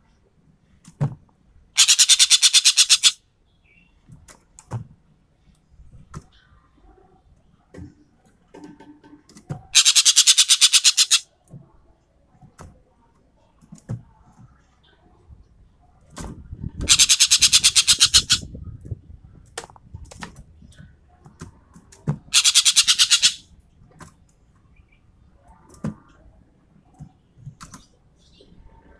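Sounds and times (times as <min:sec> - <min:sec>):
bird harsh rattling call: 0:01.8 - 0:03.2, 0:09.8 - 0:11.2, 0:16.9 - 0:18.5, 0:22.3 - 0:23.4
faint bird calls: 0:01.8 - 0:04.0, 0:09.7 - 0:11.4, 0:16.8 - 0:18.5, 0:22.3 - 0:23.4.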